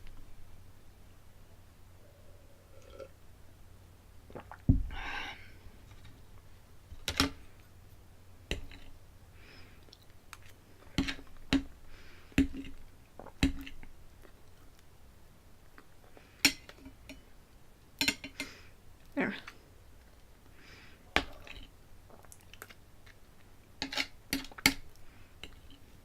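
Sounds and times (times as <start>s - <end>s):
cutlery scraping a plate: 23.8s - 24.8s.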